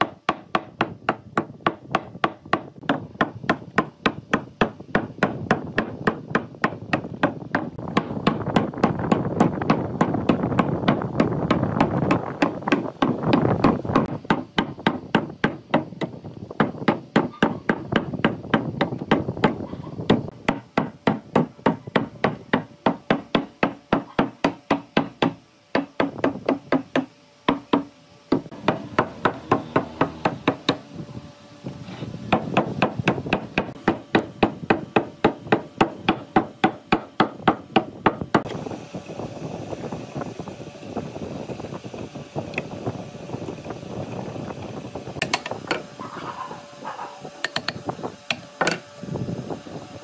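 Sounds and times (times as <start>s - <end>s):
hammering on wood: 0.0s - 30.8s, 32.3s - 38.5s.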